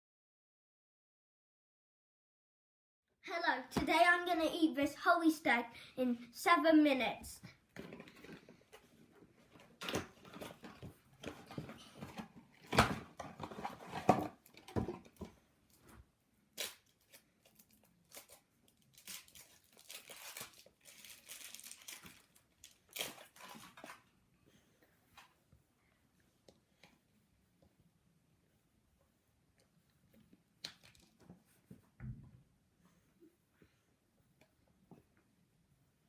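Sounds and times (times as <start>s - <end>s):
wrapping crinkling and tearing: 16.6s - 24.1s.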